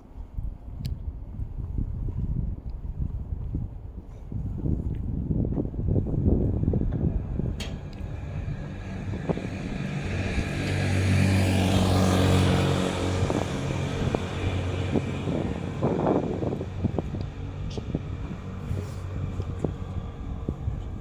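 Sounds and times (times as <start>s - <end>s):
vehicle passing by: 5.9s - 21.0s.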